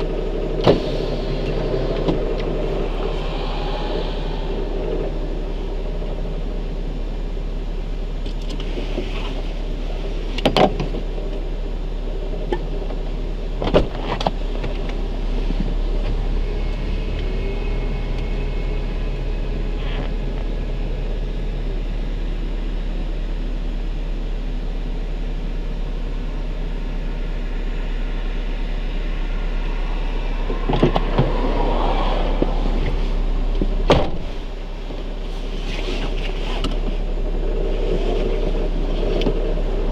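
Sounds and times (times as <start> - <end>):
car engine rattling: 0.0 - 39.9.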